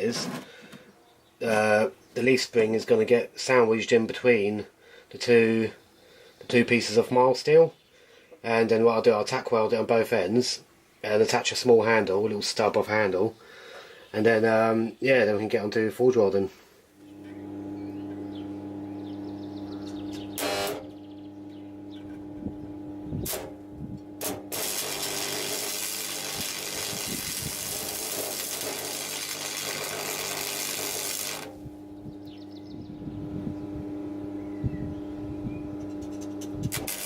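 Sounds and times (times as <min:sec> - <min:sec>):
arc welder humming: 0:17.0 - 0:32.6, 0:35.6 - 0:37.0
crackling weld: 0:20.4 - 0:20.9, 0:23.2 - 0:23.6, 0:24.2 - 0:31.6, 0:36.1 - 0:37.0
welding arc strikes: 0:20.4 - 0:20.9, 0:23.2 - 0:23.6, 0:24.2 - 0:31.6, 0:36.4 - 0:37.0.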